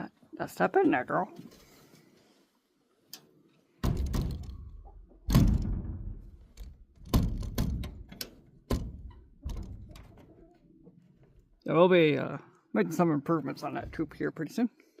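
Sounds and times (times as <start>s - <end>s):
heavy thunks and knocks: 3.8s - 10.3s.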